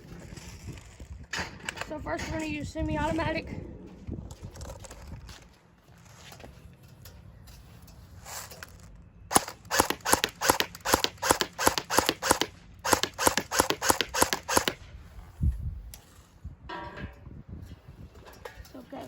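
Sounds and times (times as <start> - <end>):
airsoft gun shots: 9.3 - 14.8.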